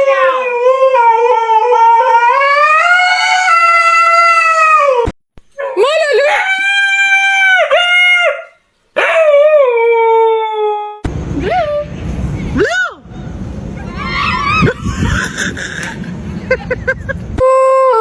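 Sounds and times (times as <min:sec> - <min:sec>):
dog howling: 0:00.0 - 0:11.8, 0:13.8 - 0:15.4.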